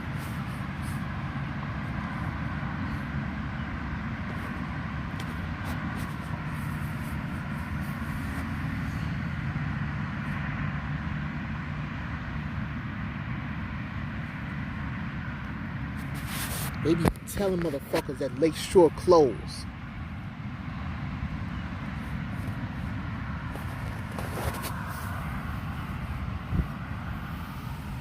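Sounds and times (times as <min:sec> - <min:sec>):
road traffic noise: 0:00.0 - 0:28.0.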